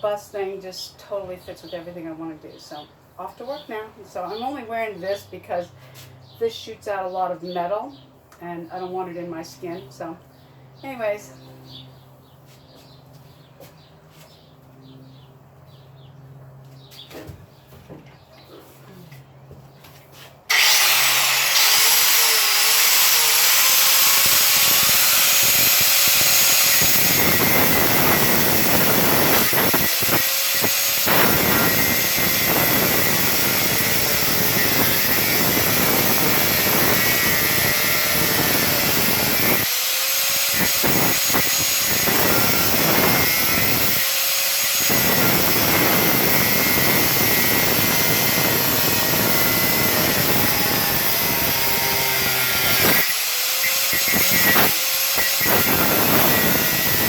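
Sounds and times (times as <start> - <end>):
angle grinder grinding metal: 20.5 - 57.0.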